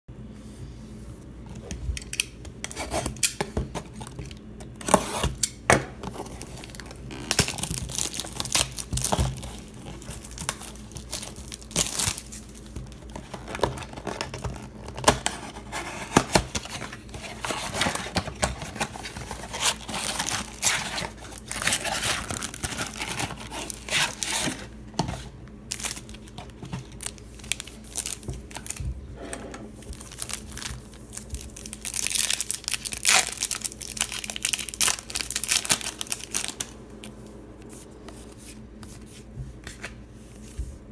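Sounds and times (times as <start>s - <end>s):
plastic wrapping tearing and crinkling: 6.0s - 28.9s, 29.8s - 37.2s.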